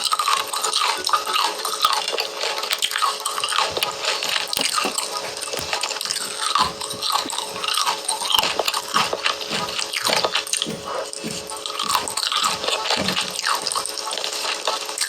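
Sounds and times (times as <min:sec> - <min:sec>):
wet chewing and slurping: 0:03.5 - 0:14.0.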